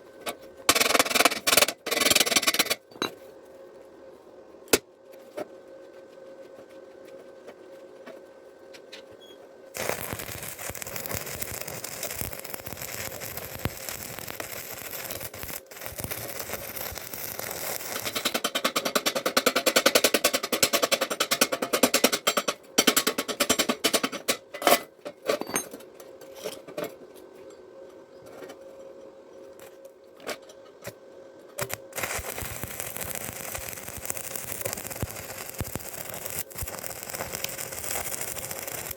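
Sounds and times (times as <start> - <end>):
crackling welding arc: 0.7 - 2.8, 9.7 - 23.0, 31.6 - 38.9.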